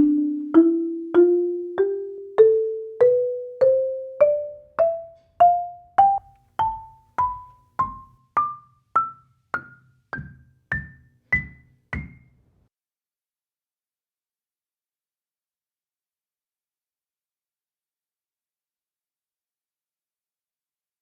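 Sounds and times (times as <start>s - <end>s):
marimba notes climbing: 0.0s - 12.3s.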